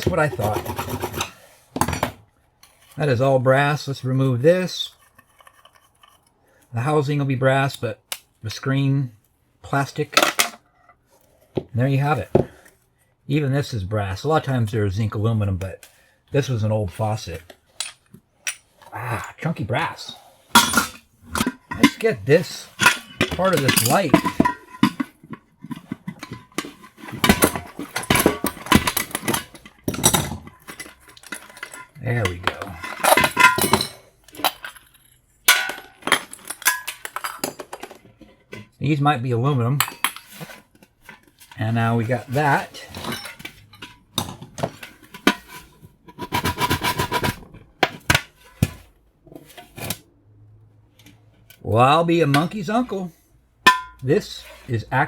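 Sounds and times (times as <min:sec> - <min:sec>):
metal scraping: 0:00.0 - 0:01.6, 0:20.0 - 0:34.2
rapid scraping strokes: 0:00.2 - 0:01.5
metal knocks and clinks: 0:20.6 - 0:38.7, 0:53.7 - 0:54.0.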